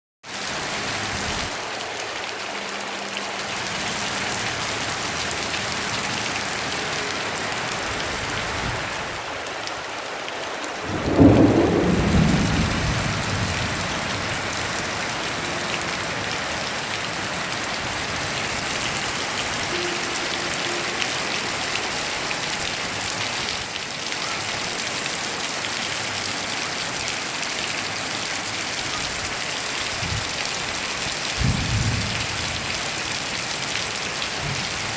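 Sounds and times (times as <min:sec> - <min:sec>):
steady rain: 0:00.2 - 0:34.9
thunderclap rumbling: 0:10.8 - 0:22.0, 0:31.4 - 0:32.8.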